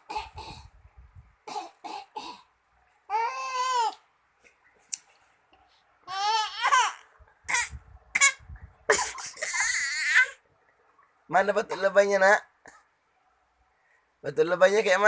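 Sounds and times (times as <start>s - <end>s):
baby fake coughing: 0.0s - 0.7s, 1.4s - 2.5s, 6.4s - 10.4s
baby squealing: 6.1s - 8.4s, 9.1s - 10.4s.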